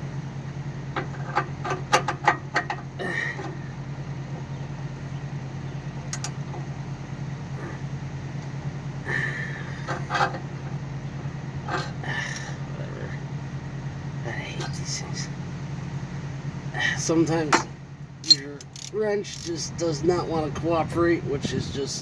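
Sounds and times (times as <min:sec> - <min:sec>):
low mechanical hum: 0:00.0 - 0:22.0
wrench clicking on metal: 0:18.2 - 0:19.6.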